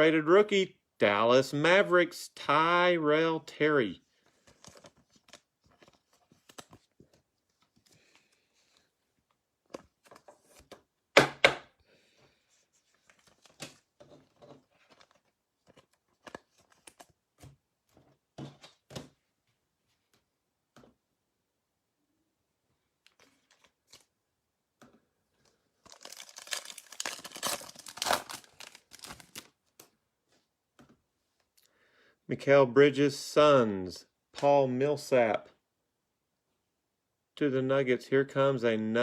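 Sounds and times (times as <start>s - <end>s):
foil wrapper tearing and crinkling: 25.8s - 29.5s.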